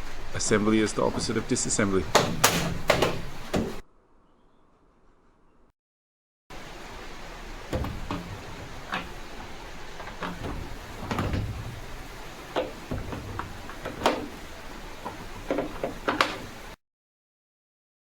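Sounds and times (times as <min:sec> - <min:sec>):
washing machine panels knocking: 0:00.7 - 0:03.8, 0:06.6 - 0:16.8.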